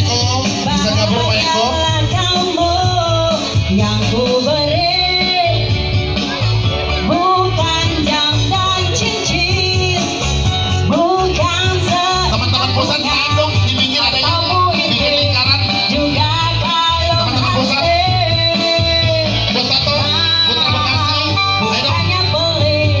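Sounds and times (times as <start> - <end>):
pulsing bass beat: 0.0 - 23.0
song with sung vocals: 0.0 - 23.0.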